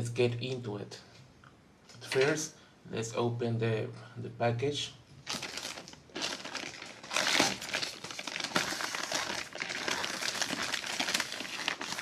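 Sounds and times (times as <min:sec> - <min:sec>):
packaging wrapping crinkling: 0:05.2 - 0:12.0.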